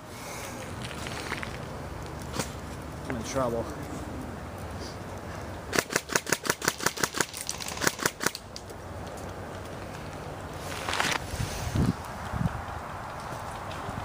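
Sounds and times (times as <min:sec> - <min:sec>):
airsoft gun rapid firing: 0:05.7 - 0:08.4.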